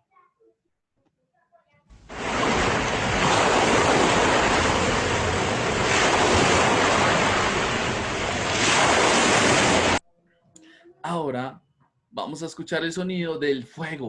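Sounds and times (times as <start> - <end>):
ocean waves on shore: 1.9 - 10.0.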